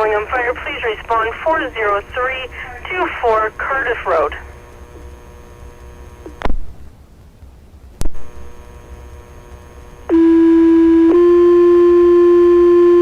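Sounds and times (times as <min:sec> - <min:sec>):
faint hum: 0:00.0 - 0:13.0
radio clicks: 0:06.2 - 0:06.7
buzzy two-tone pager alert: 0:10.1 - 0:13.0.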